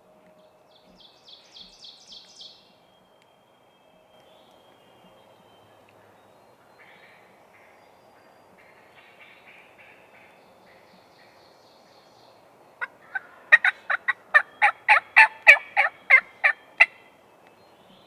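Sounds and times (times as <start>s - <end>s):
turkey yelps: 12.8s - 17.0s.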